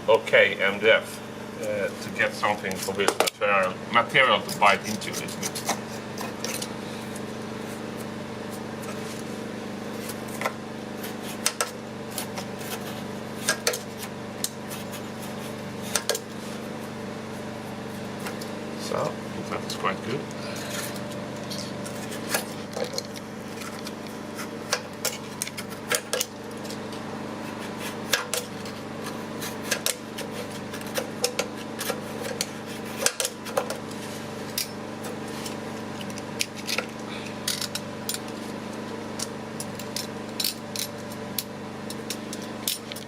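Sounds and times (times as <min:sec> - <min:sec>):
steady background hum: 0:00.0 - 0:43.0
hand tool scraping on a door: 0:09.9 - 0:16.8, 0:20.4 - 0:35.8.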